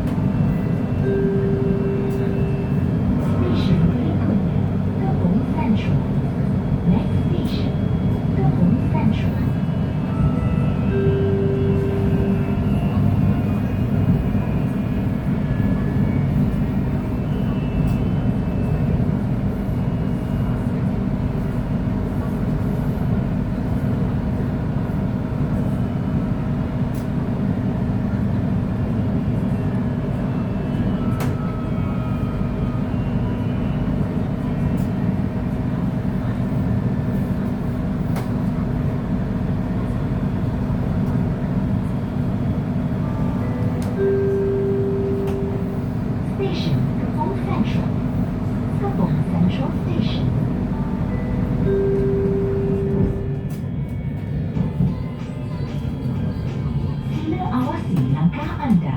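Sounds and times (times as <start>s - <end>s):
train wheels rumbling on rails: 0.0s - 58.9s
train motor hum: 37.4s - 58.8s.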